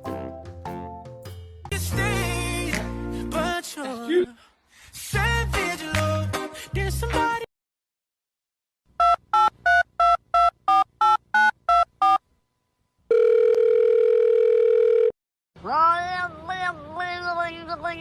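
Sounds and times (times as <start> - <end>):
steady phone tone: 13.1 - 15.2.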